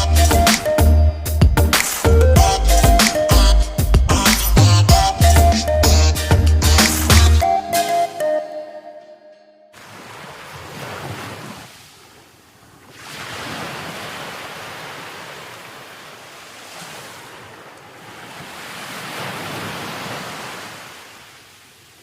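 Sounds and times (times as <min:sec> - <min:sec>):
sea waves breaking: 0:09.8 - 0:22.0.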